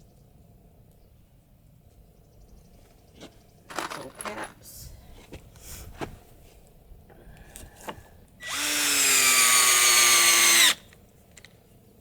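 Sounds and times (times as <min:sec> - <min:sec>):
power drill driving a screw: 0:08.4 - 0:10.9.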